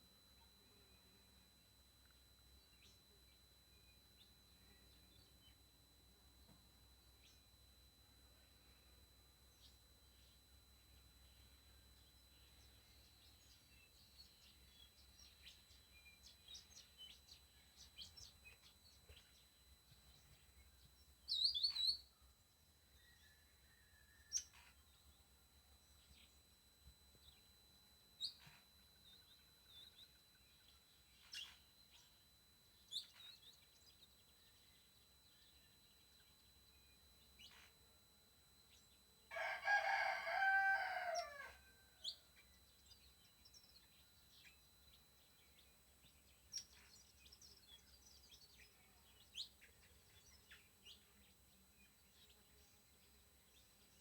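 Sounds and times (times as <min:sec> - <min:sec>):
rooster crowing: 0:39.3 - 0:42.2.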